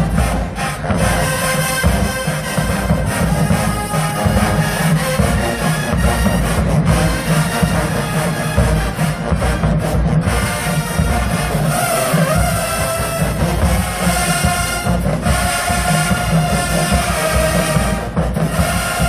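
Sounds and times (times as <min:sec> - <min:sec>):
marching band playing loud: 0:00.0 - 0:19.0.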